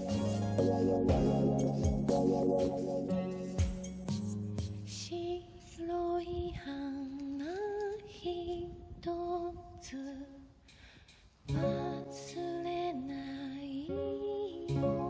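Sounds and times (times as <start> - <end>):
slow gentle background music: 0.0 - 10.0, 11.5 - 15.0.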